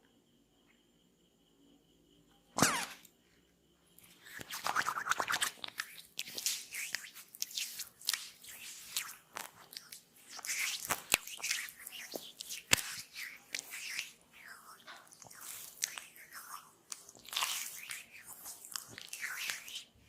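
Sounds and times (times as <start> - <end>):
oiled hands massaging skin: 4.1 - 20.0.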